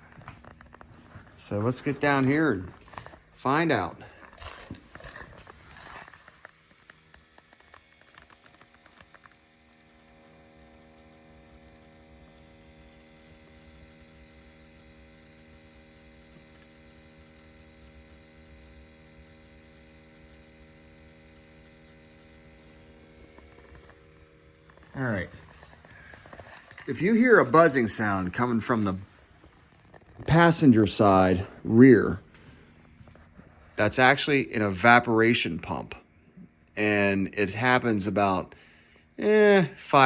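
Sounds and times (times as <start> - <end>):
electric pump buzzing: 0.0 - 40.0
clicks and rustles: 4.1 - 9.4, 24.6 - 27.2.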